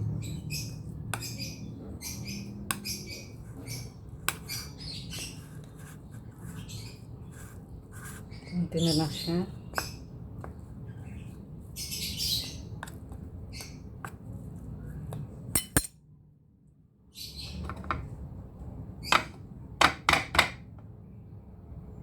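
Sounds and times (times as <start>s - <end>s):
utensils clinking against dishes: 15.6s - 16.0s.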